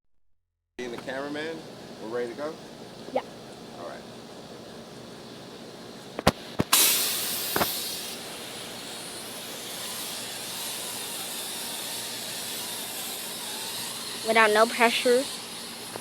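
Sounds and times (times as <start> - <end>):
spray wand hissing: 6.7 - 16.0.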